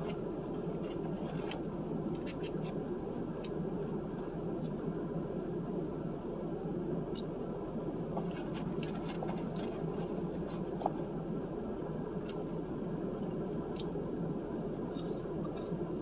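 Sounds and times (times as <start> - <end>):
low background hum: 0.0 - 16.0
chewing and mouth clicks: 13.2 - 15.9.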